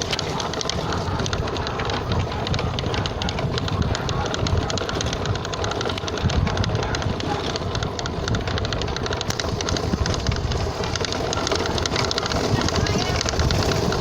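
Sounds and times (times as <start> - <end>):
rapid clicking and rattling: 0.0 - 14.0.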